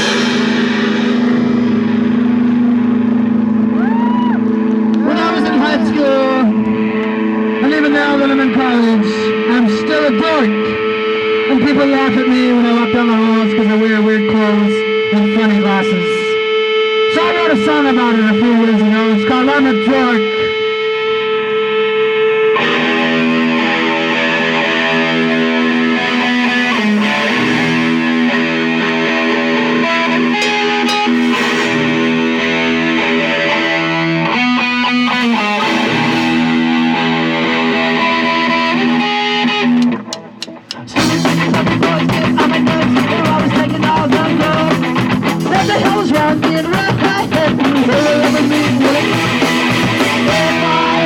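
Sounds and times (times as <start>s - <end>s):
drums and full band: 0.0s - 5.6s, 26.0s - 33.8s, 35.1s - 37.6s, 39.8s - 51.0s
distorted electric guitar chords: 0.0s - 51.0s.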